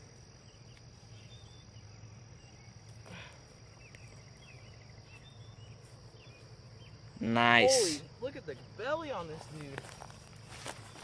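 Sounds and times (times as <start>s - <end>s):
insect drone: 0.0s - 11.0s
bird chirps: 0.4s - 3.0s, 3.6s - 7.2s.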